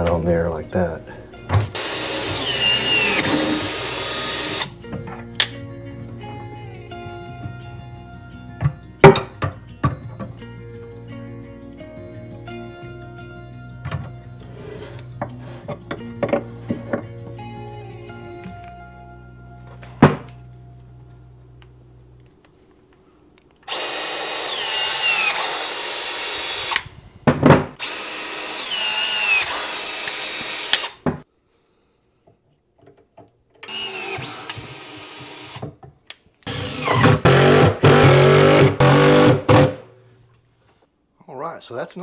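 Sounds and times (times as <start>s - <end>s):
power drill running: 1.6s - 4.7s, 23.7s - 27.0s, 27.8s - 31.0s, 33.6s - 35.6s, 36.5s - 39.7s.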